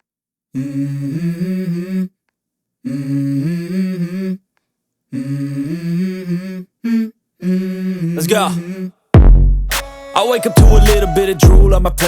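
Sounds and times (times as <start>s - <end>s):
person humming a melody: 10.2s - 12.0s.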